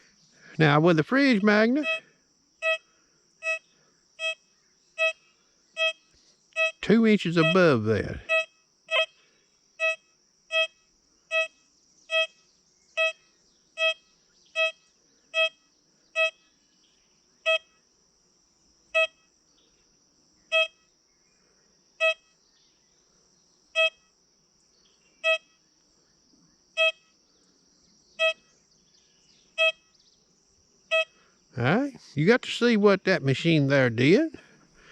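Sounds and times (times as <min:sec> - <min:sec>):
metal detector beeps: 0:01.2 - 0:02.0, 0:02.6 - 0:02.8, 0:03.4 - 0:03.6, 0:04.2 - 0:04.4, 0:05.8 - 0:06.0, 0:06.6 - 0:09.1, 0:09.8 - 0:12.4, 0:13.8 - 0:14.0, 0:14.6 - 0:14.8, 0:16.2 - 0:16.4, 0:20.5 - 0:20.8, 0:22.0 - 0:22.3, 0:23.8 - 0:24.1, 0:25.2 - 0:25.6, 0:26.8 - 0:27.1, 0:28.2 - 0:28.5, 0:29.6 - 0:29.8, 0:30.9 - 0:31.1.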